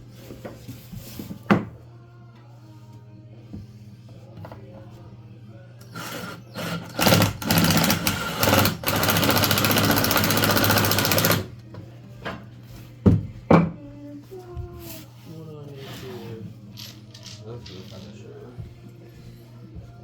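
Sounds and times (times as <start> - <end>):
handheld power tool running: 5.9 - 11.5.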